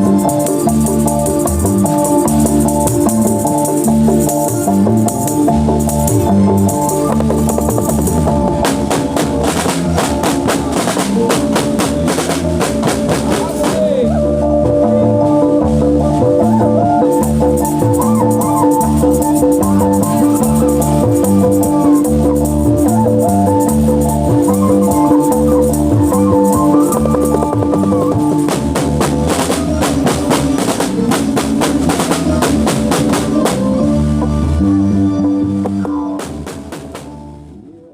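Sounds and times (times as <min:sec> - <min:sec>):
drum and percussion hits: 0:00.0 - 0:34.4, 0:35.6 - 0:37.3
bass line: 0:00.0 - 0:37.9
sustained keyboard melody: 0:00.0 - 0:37.9
fast drum fill: 0:07.1 - 0:14.0, 0:26.0 - 0:33.7.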